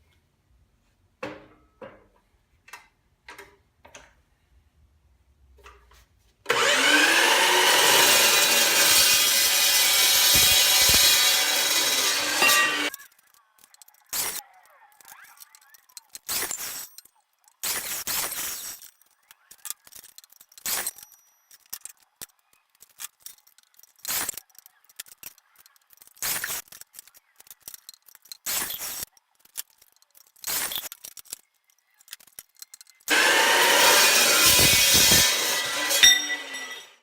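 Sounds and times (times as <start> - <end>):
small clicks and knocks: 1.2 - 4.2, 12.9 - 33.1
saw cutting steel tubing: 6.5 - 13.0, 33.1 - 37.0.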